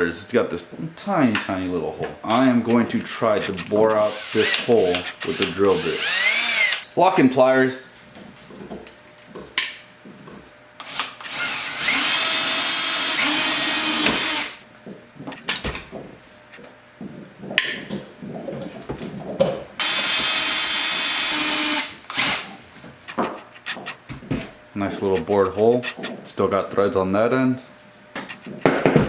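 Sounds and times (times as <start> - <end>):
power drill boring: 3.9 - 6.9, 10.8 - 14.6, 19.8 - 22.5.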